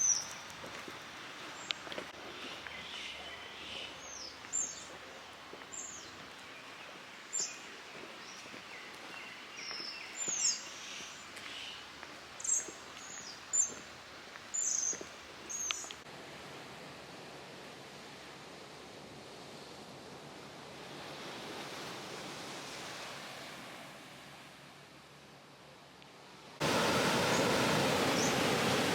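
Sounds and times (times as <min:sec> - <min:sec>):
small birds chirping: 0:00.0 - 0:16.0
outdoor background hiss: 0:00.0 - 0:28.9.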